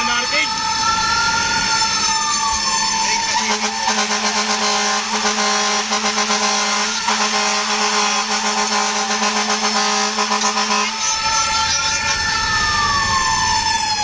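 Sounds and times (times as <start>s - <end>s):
fire truck horn blast: 3.1s - 12.0s.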